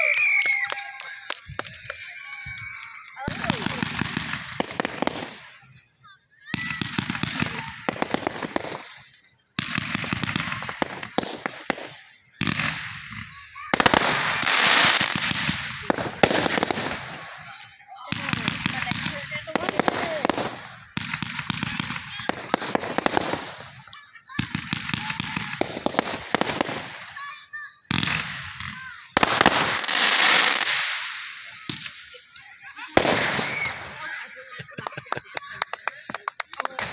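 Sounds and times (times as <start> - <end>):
fireworks crackling: 0.0 - 36.9
sharp crack: 27.9 - 32.1, 33.0 - 33.9.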